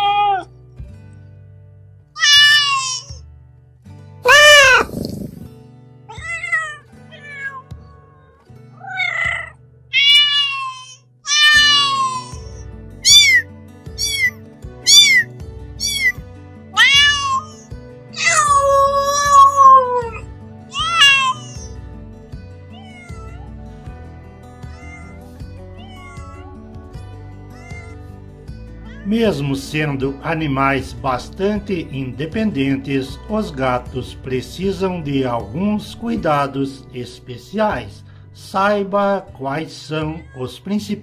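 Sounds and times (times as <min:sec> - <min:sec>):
cat meowing: 0:00.0 - 0:00.5, 0:02.2 - 0:03.2, 0:04.3 - 0:05.5, 0:06.1 - 0:07.8, 0:08.8 - 0:16.2, 0:16.8 - 0:21.8, 0:22.7 - 0:23.6, 0:24.7 - 0:26.7, 0:27.4 - 0:28.0, 0:28.8 - 0:29.2, 0:40.0 - 0:40.5
background music: 0:00.0 - 0:41.0.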